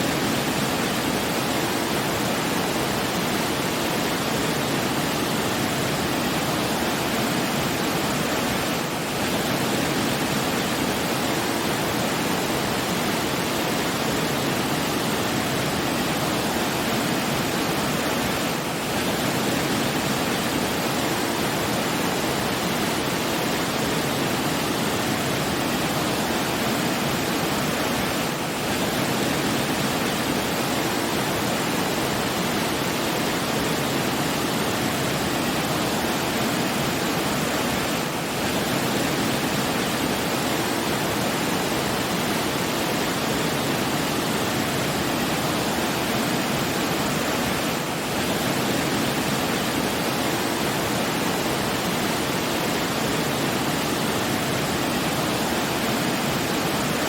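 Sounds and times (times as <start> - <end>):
falling water rushing: 0.0 - 57.0.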